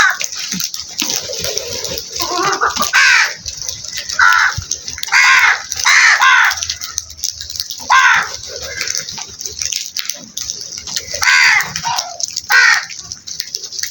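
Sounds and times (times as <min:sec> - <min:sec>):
crows cawing: 0:00.0 - 0:00.4, 0:01.6 - 0:09.5, 0:11.0 - 0:13.0.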